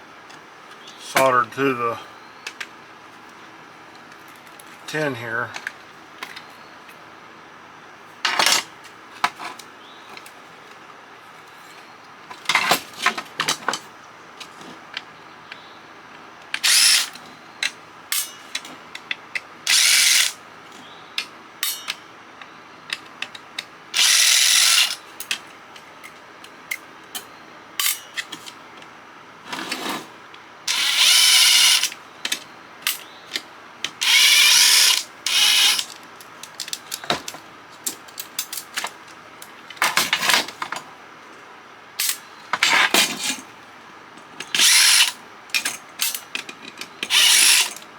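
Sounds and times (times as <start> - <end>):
clicks and clatter of parts: 8.2 - 10.8, 11.6 - 28.9, 29.5 - 41.4, 42.0 - 47.9
cordless drill bursts: 16.6 - 17.2, 19.7 - 20.4, 24.0 - 25.0, 30.7 - 31.9, 34.0 - 36.0, 44.6 - 45.2, 47.1 - 47.8.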